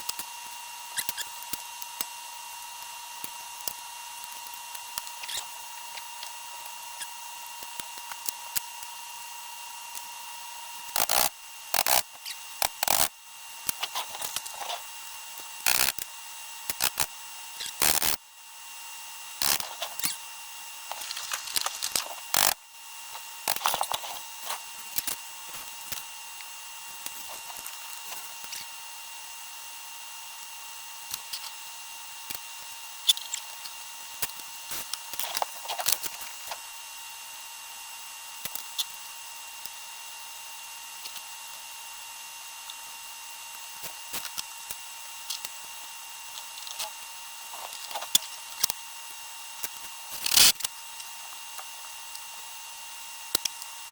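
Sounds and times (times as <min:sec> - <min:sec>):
tools and parts clicking: 0:11.0 - 0:12.0, 0:20.9 - 0:26.0.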